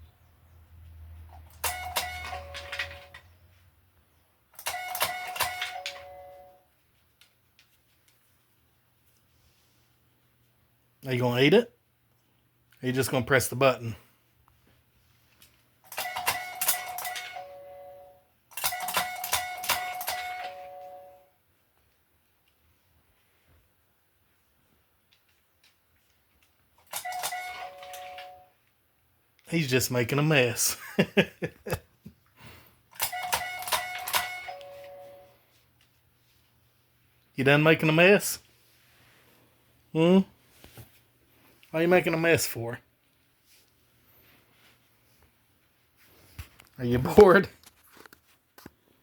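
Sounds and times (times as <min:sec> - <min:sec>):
electronic doorbell chime: 0:01.6 - 0:03.2, 0:04.6 - 0:06.7, 0:16.0 - 0:21.4, 0:27.0 - 0:28.6, 0:33.1 - 0:35.6
mechanical clicking and rattling: 0:18.5 - 0:20.6, 0:32.9 - 0:34.6.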